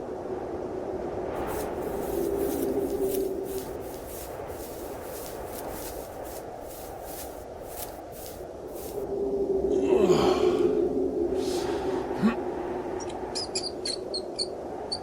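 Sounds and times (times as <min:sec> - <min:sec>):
footsteps in snow: 0:01.4 - 0:09.1.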